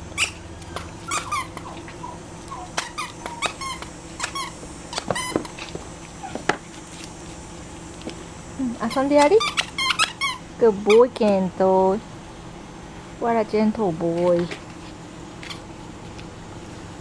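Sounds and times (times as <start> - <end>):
puppies squeaking and yipping: 0.0 - 6.9, 8.8 - 11.1.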